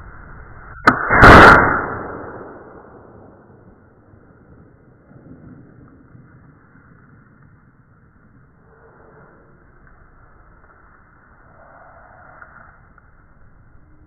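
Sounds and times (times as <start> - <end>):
potato cannon bang: 0.9 - 3.3.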